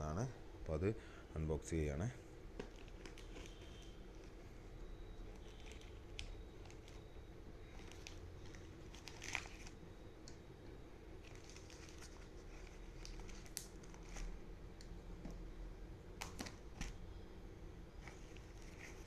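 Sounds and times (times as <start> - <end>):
package crinkling and tearing: 2.6 - 3.9, 7.8 - 9.8, 11.2 - 14.4
sharp crackle of wrapping: 7.8 - 9.8, 11.2 - 14.3.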